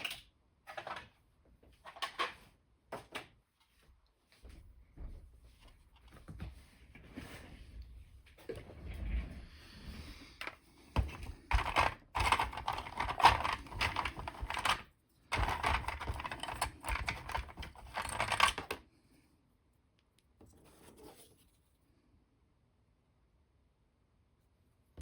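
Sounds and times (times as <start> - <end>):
tools clicking and clattering: 10.4 - 18.8.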